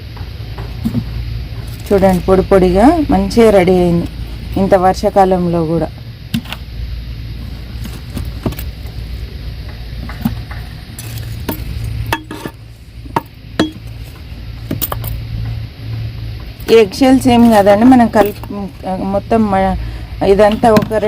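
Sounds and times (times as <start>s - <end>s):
low steady hum: 0.0s - 21.0s
compost dug in clay pot: 0.8s - 5.1s, 10.0s - 15.2s, 16.6s - 21.0s.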